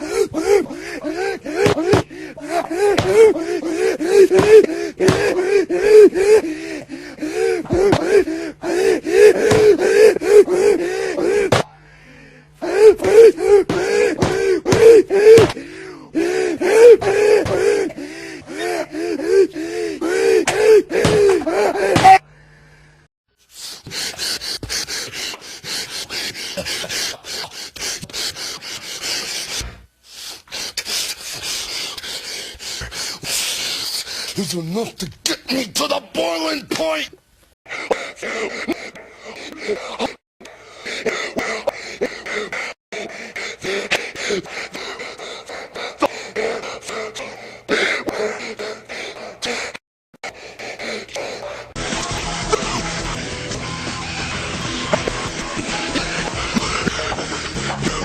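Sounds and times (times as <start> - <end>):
high-pitched gasping voice: 0.0 - 22.3, 37.7 - 51.8.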